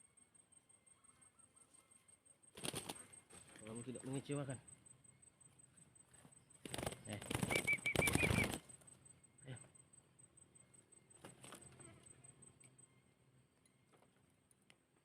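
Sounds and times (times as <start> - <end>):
dove flapping wings: 2.5 - 3.6, 6.6 - 8.8, 11.2 - 11.8.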